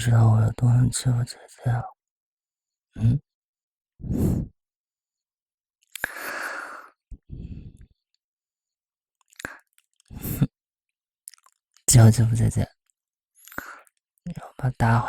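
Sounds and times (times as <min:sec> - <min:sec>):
mouth clicks: 0:05.9 - 0:06.2
man breathing: 0:06.0 - 0:07.9.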